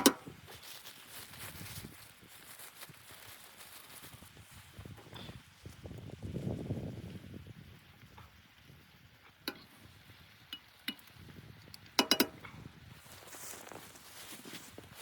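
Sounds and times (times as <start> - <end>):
faint soft rustling: 0.3 - 7.2, 12.9 - 15.0
light metallic clinks: 12.0 - 12.5.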